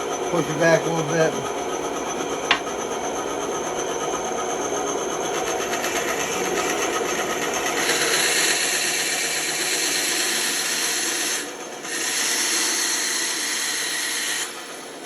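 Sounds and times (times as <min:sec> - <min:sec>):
bandsaw cutting wood: 0:00.4 - 0:02.8, 0:05.2 - 0:14.6.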